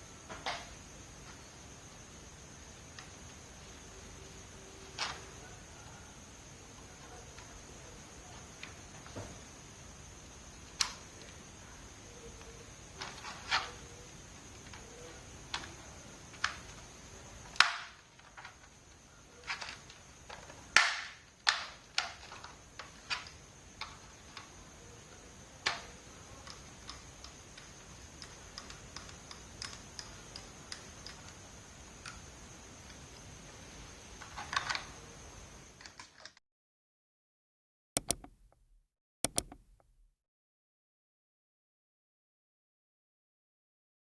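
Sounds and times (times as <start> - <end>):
laptop clicks and taps: 38.0 - 40.1.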